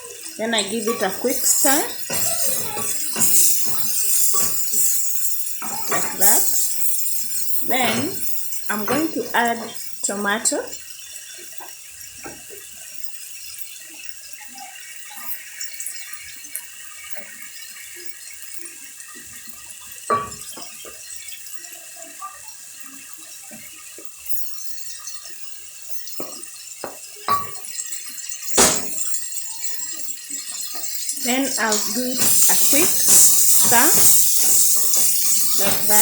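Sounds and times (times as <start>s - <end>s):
food sizzling in a pan: 0.0s - 36.0s
utensil knocking against pan: 0.8s - 6.7s, 28.6s - 29.1s, 31.3s - 36.0s.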